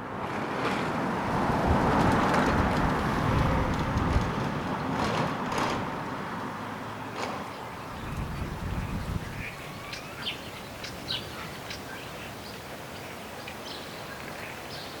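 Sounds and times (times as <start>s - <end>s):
car driving past: 0.2s - 10.0s.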